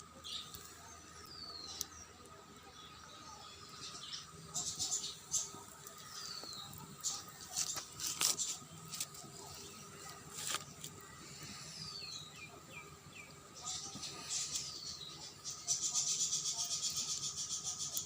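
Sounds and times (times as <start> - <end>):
birds chirping: 0.0 - 18.0.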